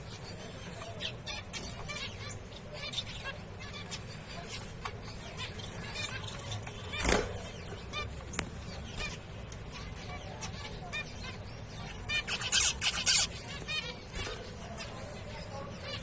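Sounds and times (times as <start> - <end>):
finches chirping: 0.0 - 16.0.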